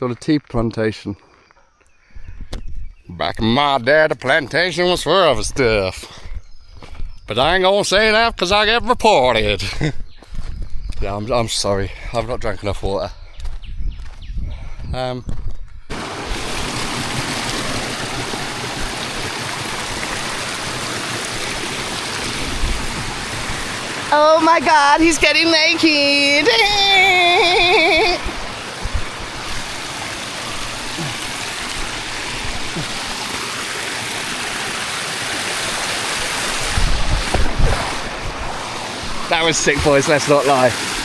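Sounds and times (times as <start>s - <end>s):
waterfall rushing: 15.9s - 41.0s
low buffeting thumps: 27.7s - 29.8s, 36.7s - 39.9s.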